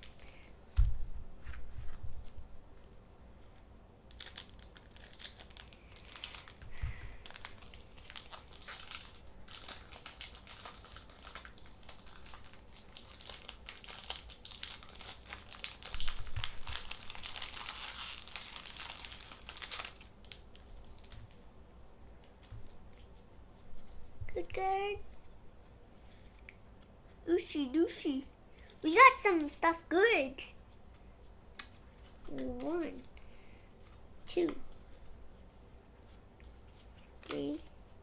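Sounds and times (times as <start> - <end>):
foil wrapper crinkling and tearing: 4.1 - 21.2.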